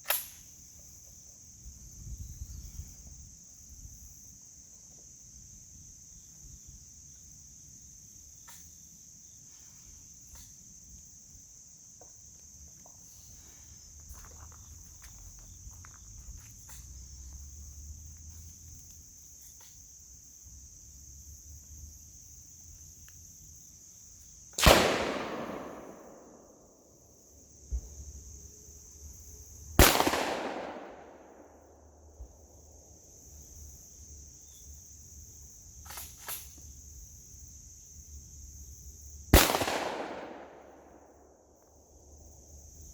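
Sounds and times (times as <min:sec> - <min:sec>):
insects buzzing: 0:00.0 - 0:42.9
echoing gunshots: 0:24.6 - 0:26.7, 0:29.8 - 0:31.5, 0:39.4 - 0:41.0.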